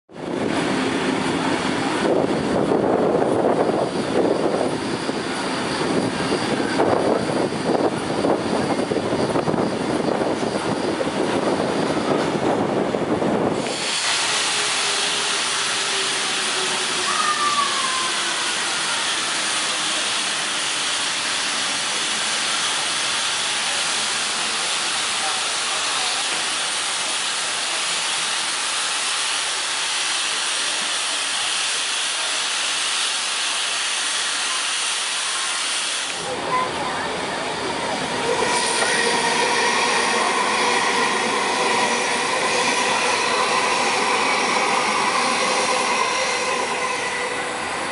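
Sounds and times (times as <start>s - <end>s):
train rumbling and clattering: 0.1s - 33.6s, 34.4s - 47.9s.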